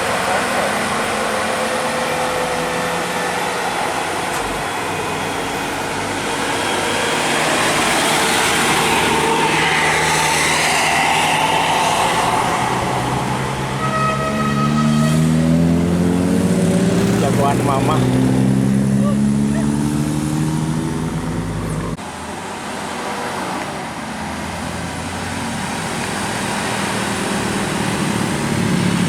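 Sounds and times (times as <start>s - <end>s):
engine rising in pitch: 0.0s - 22.0s
road traffic passing: 0.0s - 29.0s.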